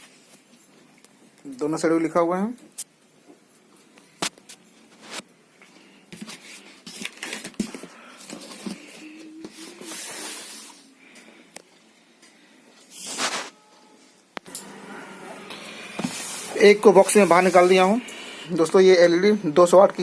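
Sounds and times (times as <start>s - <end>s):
cardboard rustling and scraping: 6.2s - 10.8s, 12.9s - 13.6s, 14.8s - 18.0s.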